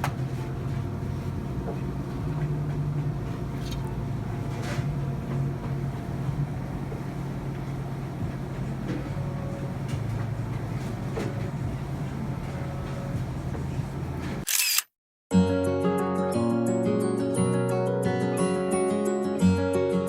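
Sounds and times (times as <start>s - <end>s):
low mechanical drone: 0.0s - 14.8s.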